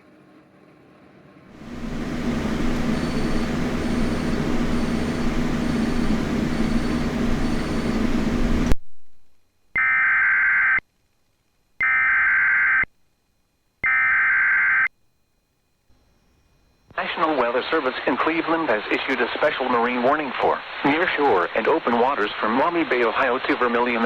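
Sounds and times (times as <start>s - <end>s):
rushing noise with low hum: 1.6s - 8.8s.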